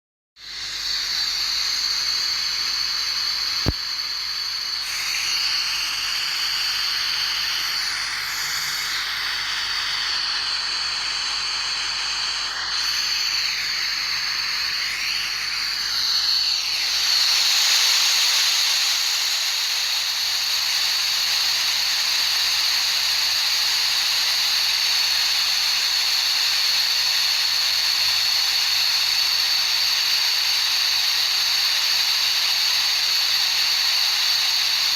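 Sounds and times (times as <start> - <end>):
high-pitched masking hiss: 0.4 - 34.9
click: 3.6 - 3.9.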